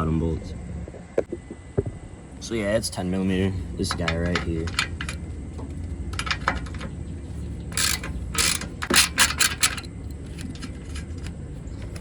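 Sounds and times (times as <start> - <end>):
ratchet wrench clicking: 7.7 - 11.1.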